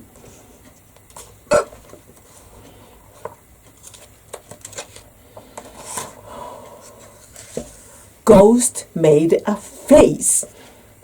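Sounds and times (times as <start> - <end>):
person hiccuping: 1.5 - 1.8.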